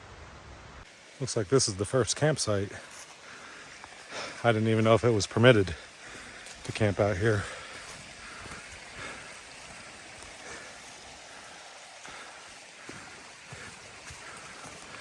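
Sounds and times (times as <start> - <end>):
mountain stream rushing: 0.2 - 15.0.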